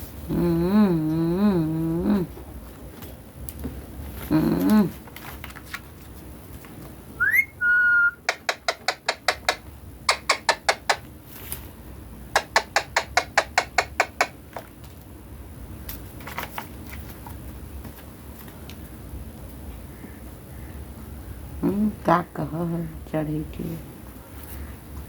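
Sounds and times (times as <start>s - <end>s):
parrot sharp repeated calls: 7.2s - 8.3s
parrot whistling: 7.2s - 8.3s.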